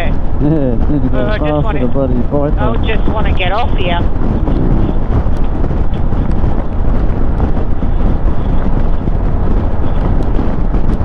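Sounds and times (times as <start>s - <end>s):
motorcycle riding noise: 0.0s - 11.0s
wind buffeting microphone: 0.0s - 11.0s.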